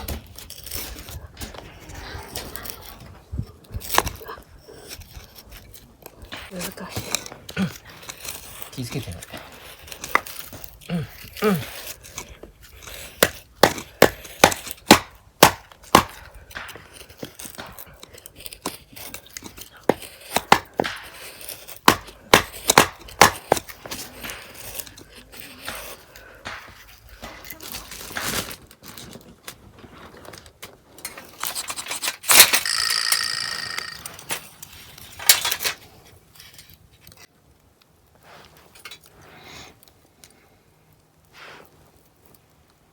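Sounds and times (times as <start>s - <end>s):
metal clatter: 31.0s - 35.8s
metal objects scraping and clicking: 31.0s - 37.3s
sharp metallic clang: 32.2s - 34.3s.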